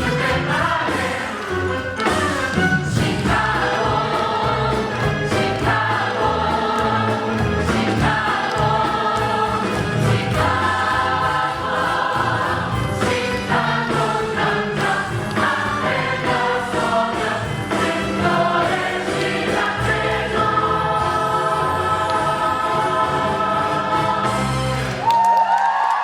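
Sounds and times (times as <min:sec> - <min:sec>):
live band playing: 0:00.0 - 0:20.7
cast singing together: 0:00.0 - 0:25.0.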